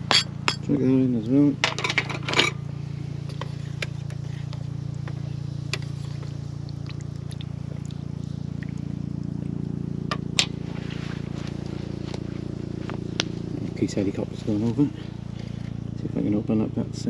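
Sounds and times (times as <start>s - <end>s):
clink: 0.0s - 0.7s.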